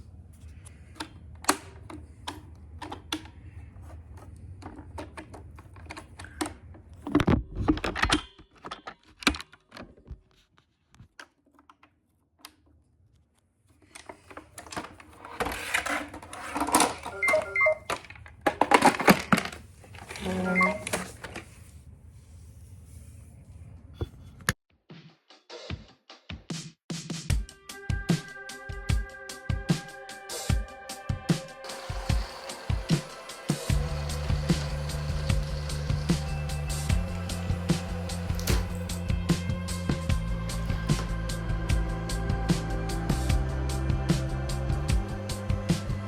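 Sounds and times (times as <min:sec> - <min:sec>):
plastic clicks and rattles: 0:00.9 - 0:10.2, 0:13.8 - 0:21.5
low motor hum: 0:31.7 - 0:43.6.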